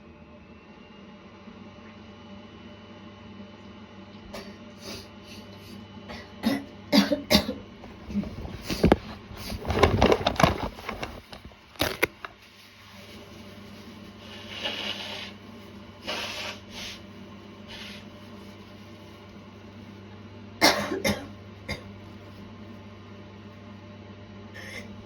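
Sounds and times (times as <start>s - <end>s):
woman coughing: 6.1s - 7.7s, 20.6s - 21.9s.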